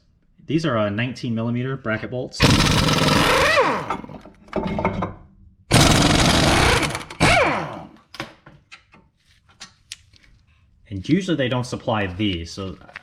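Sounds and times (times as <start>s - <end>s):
impact wrench running: 2.4s - 4.2s, 5.7s - 8.0s.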